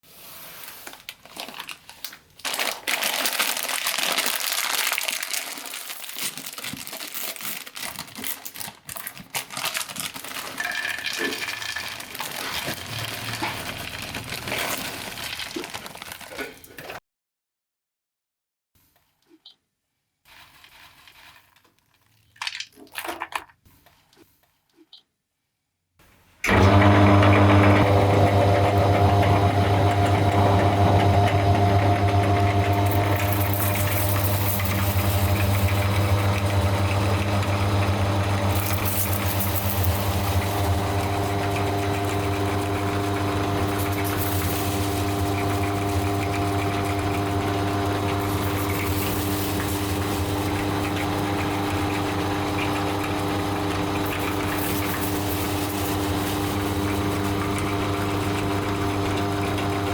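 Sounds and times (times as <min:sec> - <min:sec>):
snacks crackling as crushed: 0:00.9 - 0:16.9
meat grinder motor humming: 0:10.1 - 0:16.2, 0:26.5 - 0:59.9.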